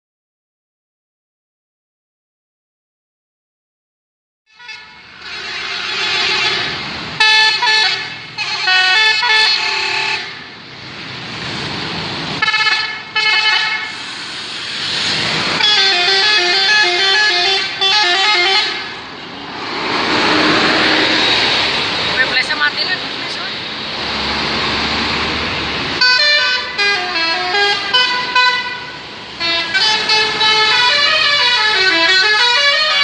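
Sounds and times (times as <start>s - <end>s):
multi-tone bus horn melody: 4.5s - 10.6s, 12.4s - 14.0s, 15.6s - 19.1s, 26.0s - 33.0s
vehicle rushing noise: 4.9s - 7.2s, 10.2s - 16.8s, 18.5s - 26.8s.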